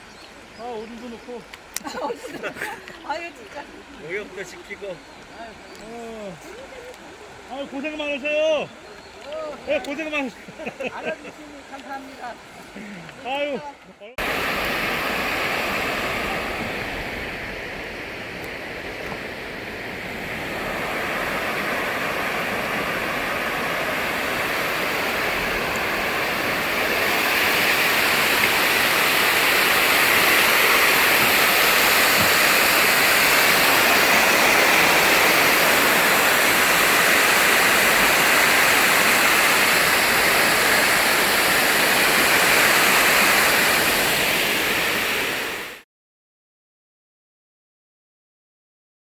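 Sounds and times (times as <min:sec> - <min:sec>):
river water rushing over rapids: 0:14.2 - 0:45.8.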